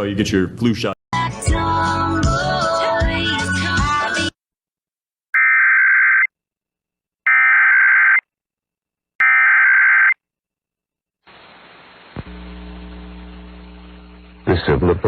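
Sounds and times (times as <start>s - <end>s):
faint hiss: 11.2s - 14.3s.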